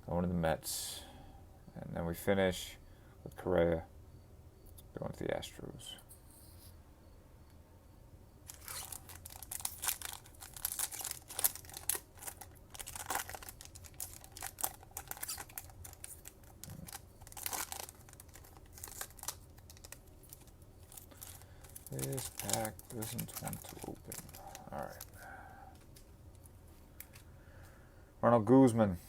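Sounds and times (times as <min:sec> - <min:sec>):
foil wrapper crinkling: 0:08.5 - 0:27.3.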